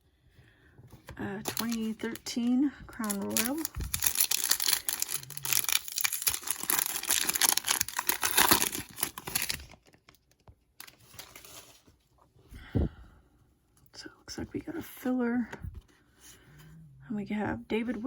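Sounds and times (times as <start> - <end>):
plastic wrapper tearing and crinkling: 1.4 - 11.8.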